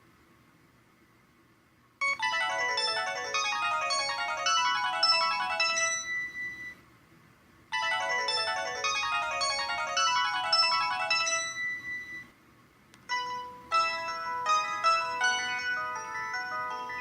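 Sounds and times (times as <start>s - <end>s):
chiming phone ringtone: 2.0s - 6.8s, 7.7s - 12.3s, 13.1s - 17.0s
different phone ringtone: 2.0s - 6.8s, 7.7s - 12.3s, 13.1s - 17.0s.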